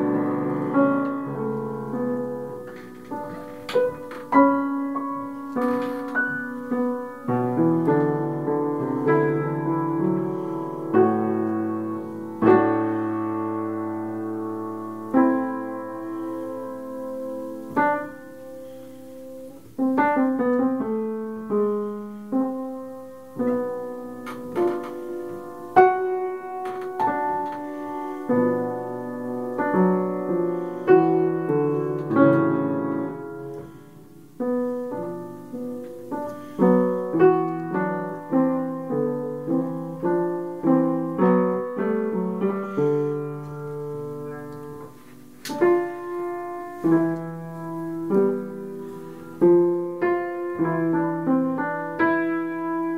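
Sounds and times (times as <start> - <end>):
solo piano: 0.0 - 52.9.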